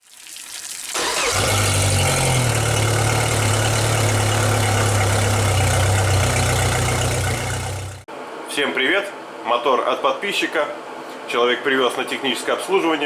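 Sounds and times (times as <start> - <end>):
engine knocking: 1.0 - 8.0
outboard motor running: 1.0 - 8.1.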